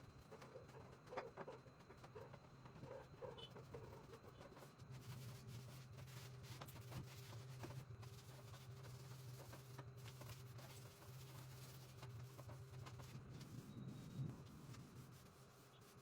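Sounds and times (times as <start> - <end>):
faint scratching and rubbing: 5.0 - 16.0.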